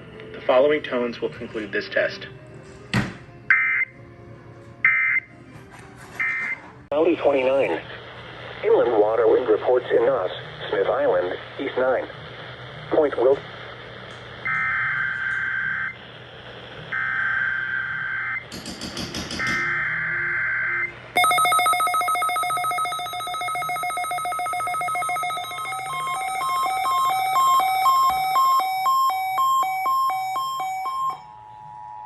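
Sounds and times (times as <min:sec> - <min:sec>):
electronic alert tones beeping: 0:21.2 - 0:31.3.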